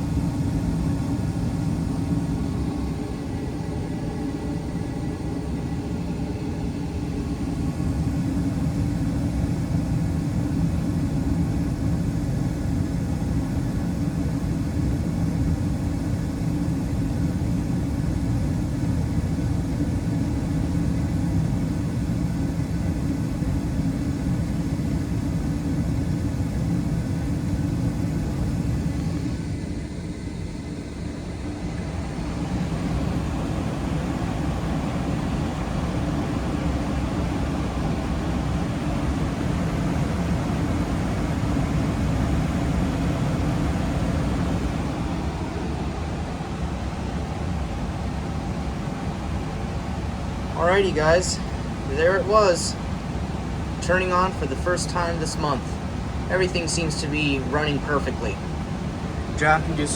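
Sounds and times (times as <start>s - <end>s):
gas furnace low rumble: 0.0s - 59.9s.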